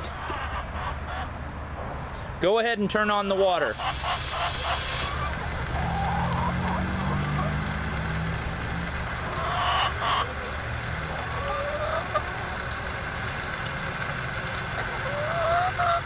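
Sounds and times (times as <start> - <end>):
chickens clucking: 0.0 - 1.4, 3.6 - 7.9, 9.2 - 13.0, 14.7 - 16.0
short rising chicken calls: 3.8 - 7.6.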